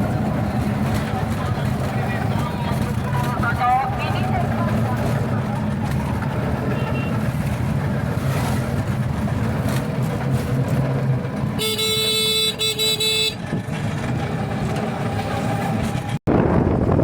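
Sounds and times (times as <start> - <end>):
vehicle engine running: 0.0 - 17.0
horn honking: 6.6 - 7.5, 11.5 - 13.6.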